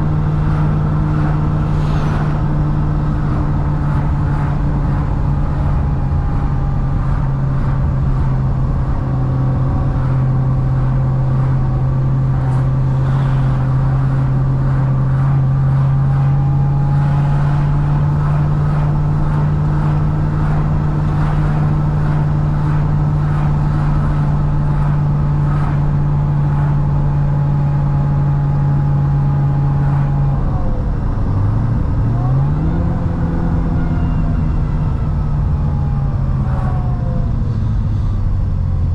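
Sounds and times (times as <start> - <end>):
car engine drone: 0.0 - 38.9
road noise: 0.0 - 38.9.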